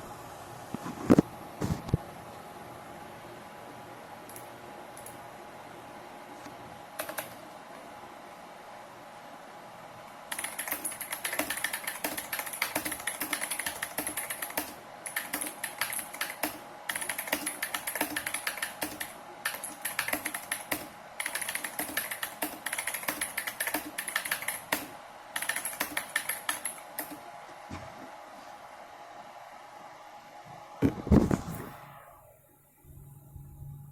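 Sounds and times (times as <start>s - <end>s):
clicky keyboard typing: 7.0s - 7.4s, 10.3s - 27.2s.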